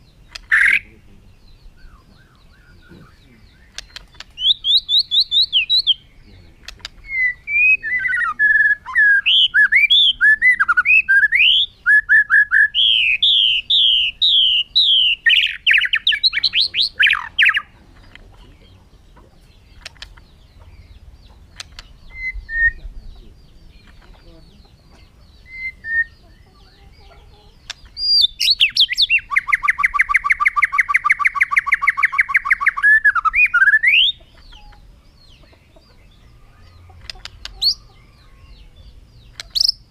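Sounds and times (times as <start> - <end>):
bird singing whistled phrases: 0.4 - 17.7, 21.8 - 23.3, 25.4 - 27.0, 27.9 - 34.8.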